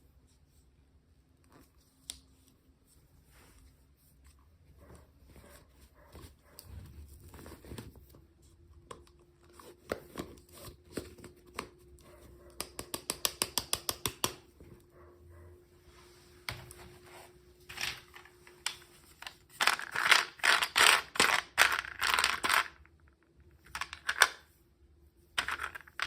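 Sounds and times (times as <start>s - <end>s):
plastic packaging clicks and taps: 12.5s - 14.5s.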